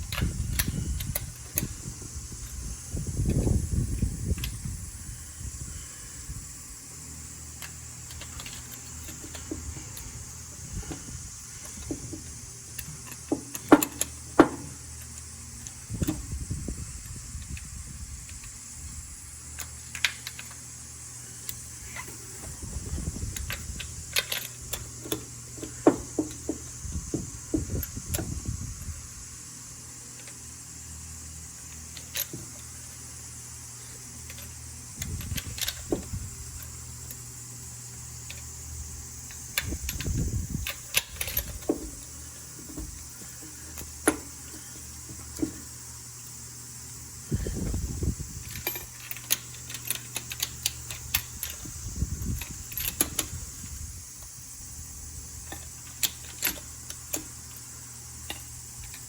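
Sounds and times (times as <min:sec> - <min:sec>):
steady low hum: 0:00.0 - 0:59.0
metal tools clinking: 0:39.6 - 0:45.8, 0:48.4 - 0:53.3.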